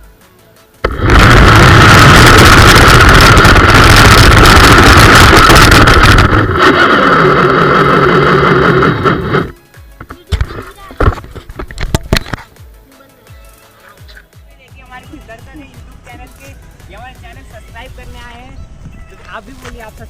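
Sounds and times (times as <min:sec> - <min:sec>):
loud dense rattling: 0:00.9 - 0:09.5
toy car motor whining: 0:00.9 - 0:09.6.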